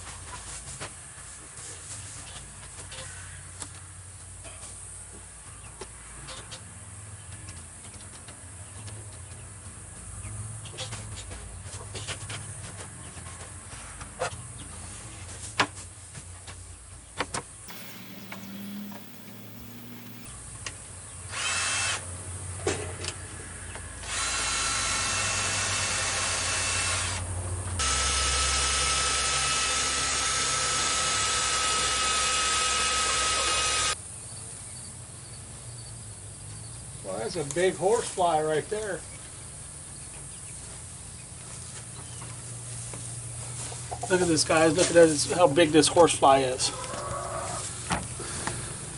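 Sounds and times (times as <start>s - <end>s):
power drill whining: 17.7s - 20.3s, 21.3s - 22.0s, 24.0s - 27.2s, 27.8s - 34.0s.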